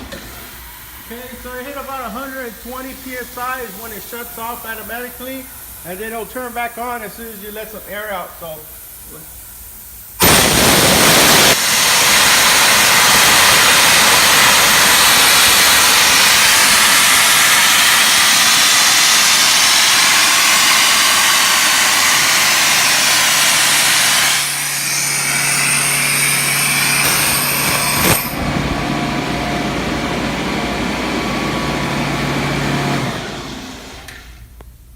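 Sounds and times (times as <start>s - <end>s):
air compressor humming: 0.0s - 34.6s
compressed air hissing from valve: 1.8s - 23.9s.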